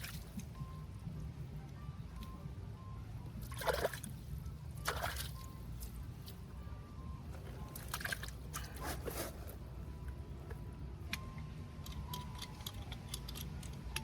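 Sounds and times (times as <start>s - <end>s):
low steady hum: 0.0s - 14.0s
water splashing in spurts: 3.4s - 4.2s, 4.8s - 5.5s, 7.8s - 8.8s.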